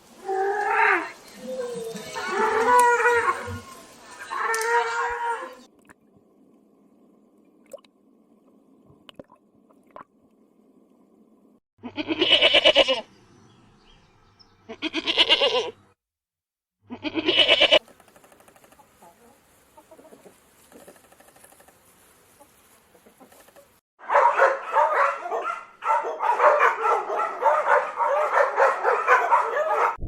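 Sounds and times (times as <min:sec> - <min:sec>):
livestock bleating: 0:11.8 - 0:13.1, 0:14.7 - 0:15.8, 0:16.9 - 0:17.8.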